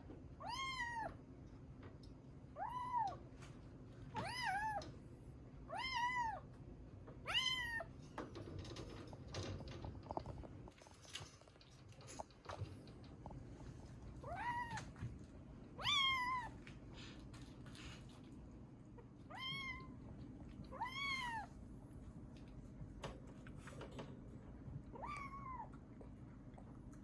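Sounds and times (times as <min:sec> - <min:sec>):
kitten meowing: 0:00.4 - 0:01.2, 0:05.7 - 0:06.4, 0:07.2 - 0:07.9, 0:14.2 - 0:14.9, 0:15.8 - 0:16.6, 0:19.3 - 0:20.0, 0:20.7 - 0:21.5, 0:24.9 - 0:25.7.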